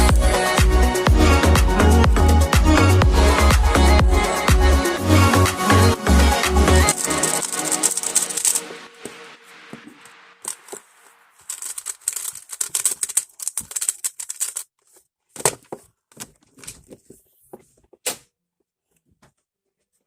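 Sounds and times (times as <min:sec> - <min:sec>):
plastic crackling: 0:06.9 - 0:17.0.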